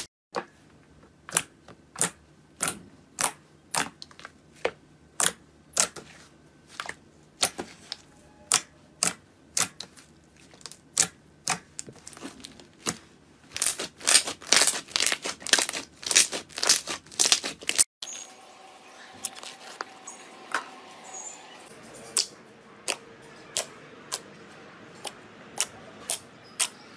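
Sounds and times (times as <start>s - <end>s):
slime popping and crackling: 8.5s - 17.8s.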